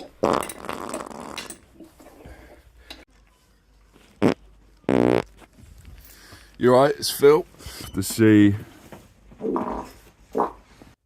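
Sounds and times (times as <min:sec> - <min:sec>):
person farting: 0:00.0 - 0:01.6, 0:04.2 - 0:05.3, 0:09.4 - 0:10.6.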